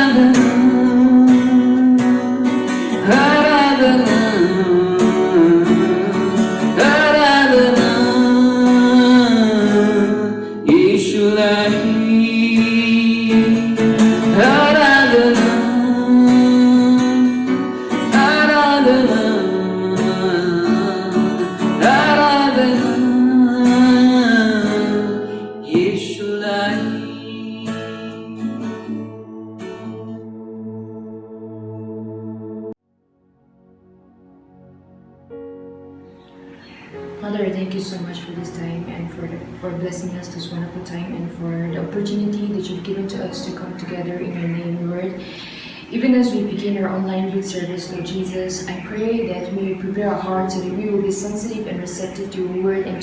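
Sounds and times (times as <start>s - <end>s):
acoustic guitar: 0.0s - 32.8s, 35.3s - 53.0s
person singing: 0.0s - 32.8s.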